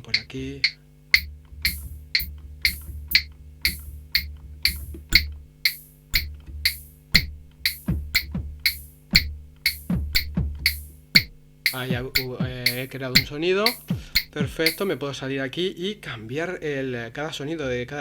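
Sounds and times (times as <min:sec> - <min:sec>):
low steady bass tone: 0:00.0 - 0:14.9
drum machine rhythm: 0:00.0 - 0:15.0
falling-pitch drum hits: 0:01.2 - 0:14.9.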